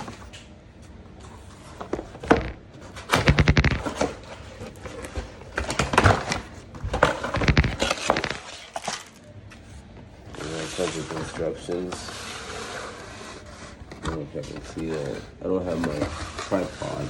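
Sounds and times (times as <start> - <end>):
packaging crackling clicks and knocks: 2.3 - 4.2, 7.0 - 9.2.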